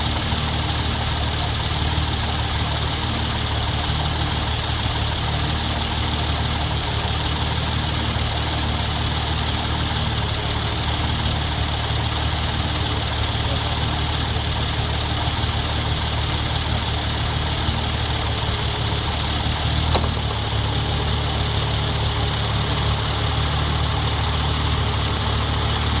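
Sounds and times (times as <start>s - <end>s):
car engine idling: 0.0s - 26.0s
sharp click: 19.8s - 20.4s
recurring knock: 19.9s - 20.4s.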